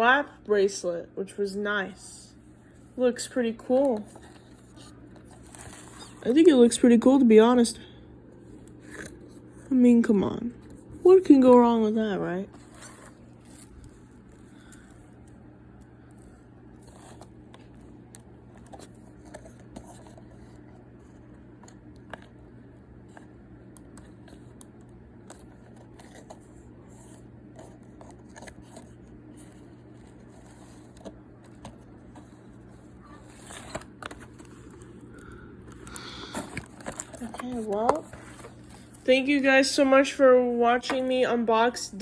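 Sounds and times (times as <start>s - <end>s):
steady low hum: 0.0s - 42.0s
clicks and scrapes of objects: 3.6s - 6.5s, 16.1s - 22.4s, 23.1s - 39.0s.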